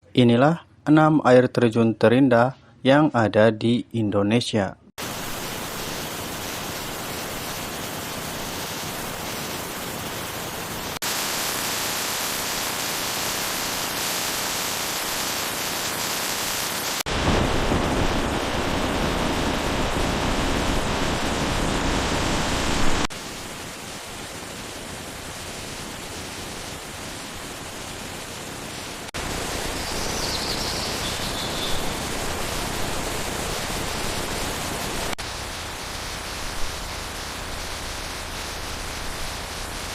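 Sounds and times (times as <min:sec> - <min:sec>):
waterfall roar: 0:05.0 - 0:39.9.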